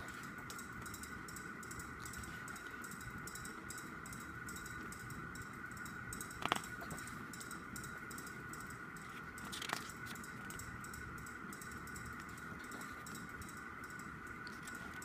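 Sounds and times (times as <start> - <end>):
faint regular ticking: 0.0 - 15.0
steady high hum: 0.0 - 15.0
album handling rustle: 9.0 - 10.6.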